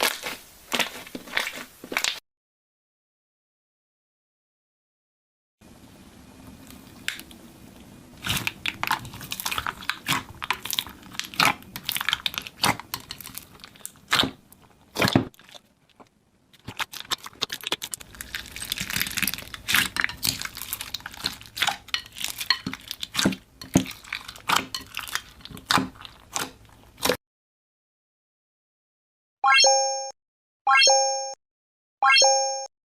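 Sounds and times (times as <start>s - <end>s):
crunchy slime squishing: 0.0s - 2.2s, 6.5s - 27.2s.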